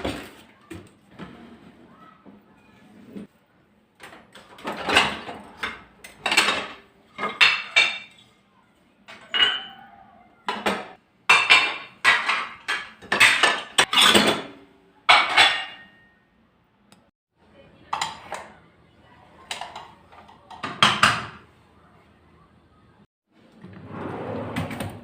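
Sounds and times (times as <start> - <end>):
dishes and cutlery clinking: 4.1 - 8.4, 9.0 - 16.2, 17.9 - 18.6, 19.4 - 21.5.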